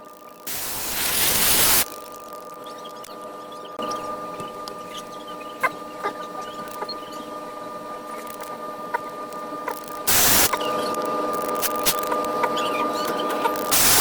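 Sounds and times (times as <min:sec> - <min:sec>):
machine electrical hum: 0:00.0 - 0:14.0.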